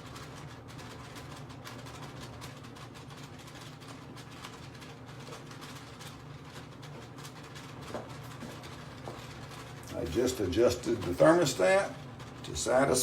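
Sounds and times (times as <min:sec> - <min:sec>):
hvac equipment humming: 0:00.0 - 0:13.0.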